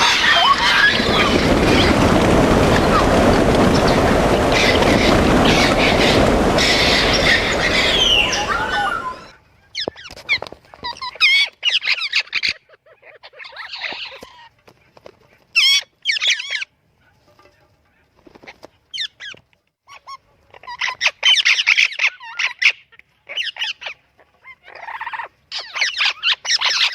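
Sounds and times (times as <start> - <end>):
loud rushing noise: 0.0 - 9.4
calls: 0.0 - 14.2
parrot squawking and whistling: 6.6 - 9.4.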